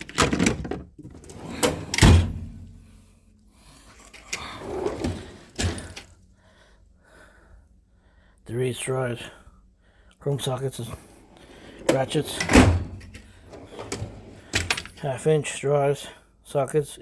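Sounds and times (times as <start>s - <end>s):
steel drawers sliding: 0.0s - 2.6s, 4.0s - 6.1s, 11.2s - 15.1s.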